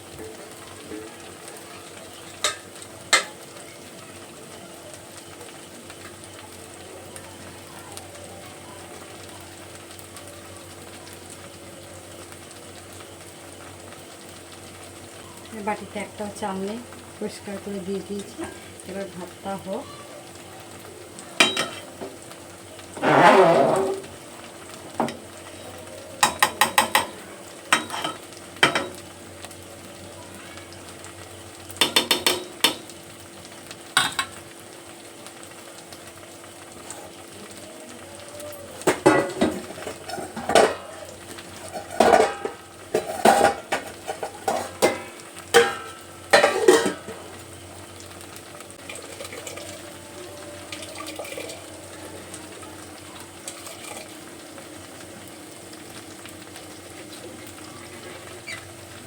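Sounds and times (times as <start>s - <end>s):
metal spoon scraping a pot: 23.0s - 24.1s.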